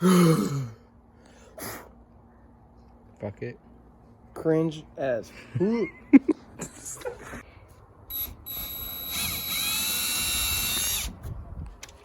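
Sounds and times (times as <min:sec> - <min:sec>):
electric drill motor whining: 0:08.1 - 0:11.2.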